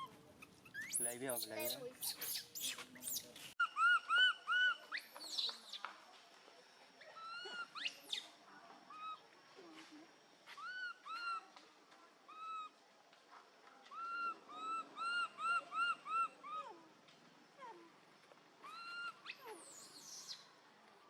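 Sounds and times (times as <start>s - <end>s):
infant monkey whimpering coo calls: 0.0s - 4.8s, 7.0s - 8.2s, 10.6s - 11.5s, 13.9s - 17.0s, 18.6s - 20.4s.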